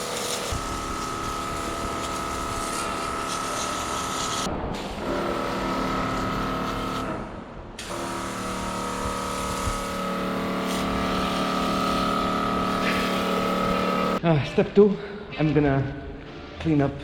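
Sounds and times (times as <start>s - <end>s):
water jet hissing: 0.0s - 7.2s, 7.8s - 14.2s
pressure washer pump whining: 0.0s - 14.2s.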